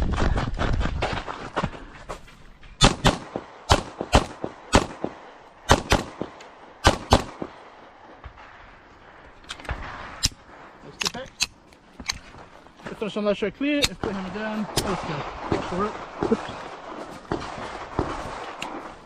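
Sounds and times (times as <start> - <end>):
wind rumble on microphone: 0.0 - 1.6
pistol shots: 2.8 - 7.7, 13.8 - 19.0.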